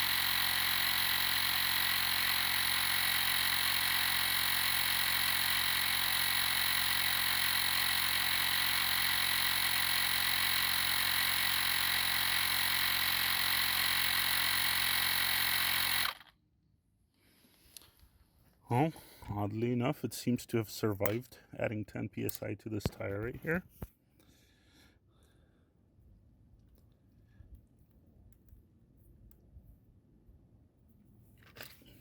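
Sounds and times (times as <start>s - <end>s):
tire inflator compressor whine: 0.0s - 16.3s.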